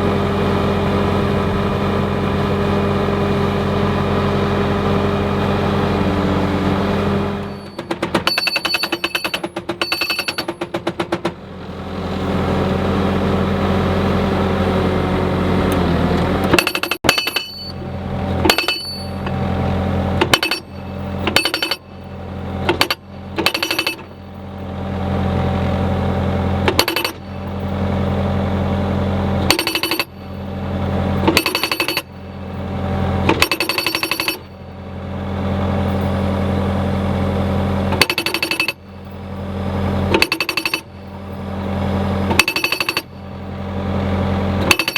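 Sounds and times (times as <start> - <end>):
skid steer engine running: 0.0 - 44.9
post driver hammer pounding: 7.4 - 11.4, 16.4 - 17.8, 18.4 - 24.3, 26.6 - 28.0, 29.4 - 30.5, 31.2 - 32.5, 33.2 - 34.6, 37.9 - 39.0, 40.1 - 41.2, 42.2 - 43.3, 44.6 - 44.9.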